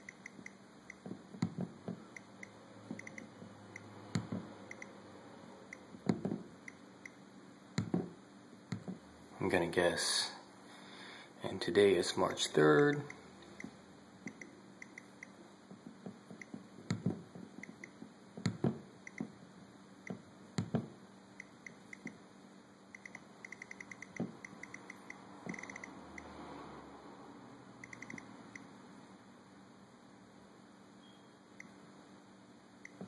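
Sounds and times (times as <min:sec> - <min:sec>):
thermostat ring ticking: 0:22.9 - 0:26.0.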